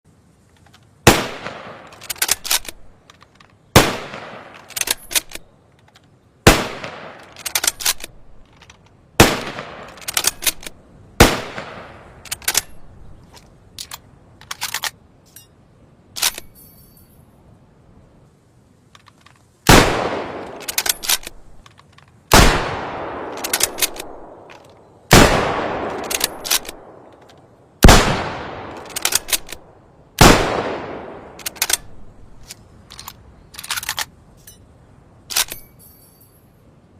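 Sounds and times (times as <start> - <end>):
rifle shots: 1.0 - 2.8, 3.8 - 5.4, 6.4 - 8.1, 9.2 - 12.0, 19.7 - 21.4, 22.3 - 27.1, 27.8 - 29.6, 30.2 - 32.0
rifle bolt metallic clicks: 1.8 - 6.2, 7.1 - 10.8, 11.6 - 17.0, 18.9 - 19.8, 20.4 - 22.4, 23.2 - 24.9, 25.8 - 27.5, 28.7 - 30.3, 31.1 - 34.7, 35.3 - 36.4.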